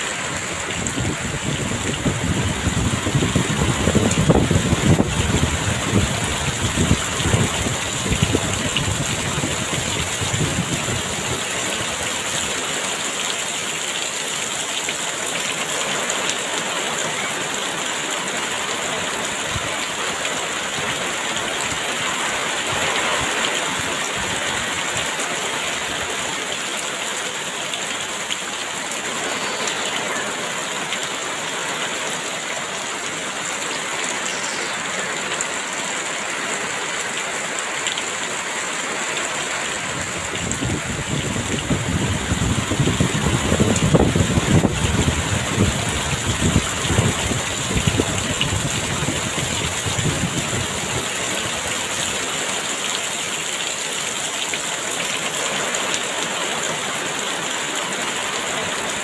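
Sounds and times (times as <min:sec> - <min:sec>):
heavy rain hissing: 0:00.0 - 0:47.8.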